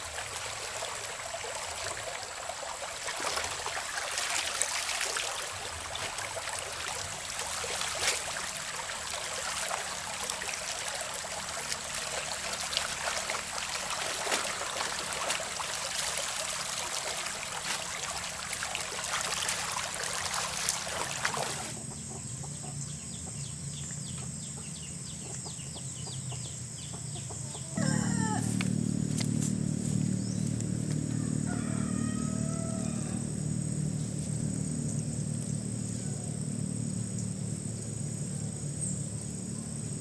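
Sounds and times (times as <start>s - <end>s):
engine drone: 5.5s - 40.0s
chickens clucking: 21.3s - 32.8s
rooster crowing: 27.0s - 33.9s, 35.9s - 36.4s
steady hiss with crackles: 28.4s - 31.6s.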